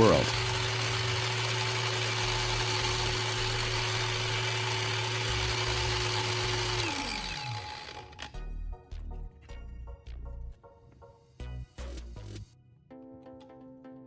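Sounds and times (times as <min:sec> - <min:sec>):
angle grinder whining: 0:00.0 - 0:08.4.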